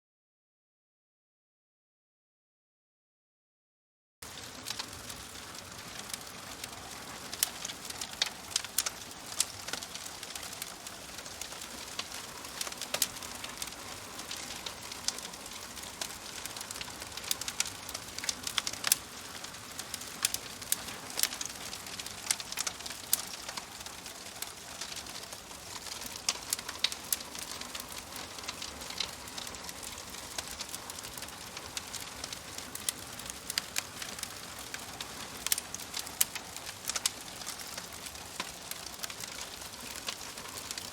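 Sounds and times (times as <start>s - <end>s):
wood fire crackling: 4.2s - 40.9s.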